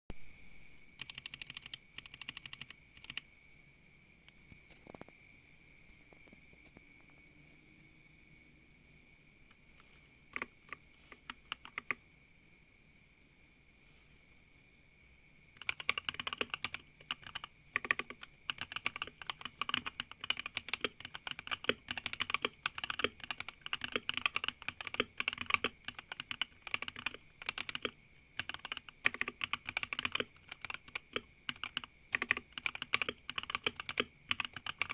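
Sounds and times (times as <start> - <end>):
faint high-pitched whine: 0.1 - 34.9
typing on mechanical keyboard: 1.0 - 3.2, 9.8 - 12.0, 15.6 - 34.9.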